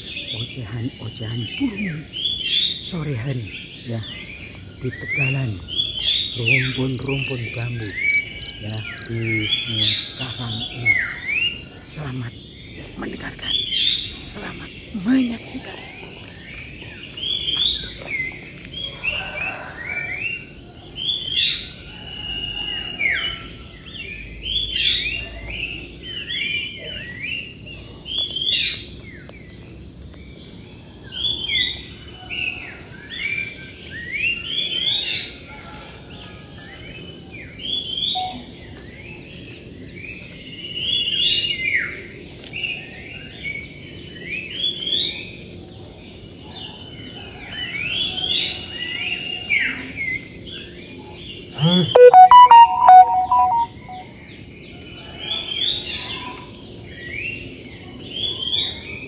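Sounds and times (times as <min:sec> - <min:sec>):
insects buzzing: 0:00.0 - 0:35.3.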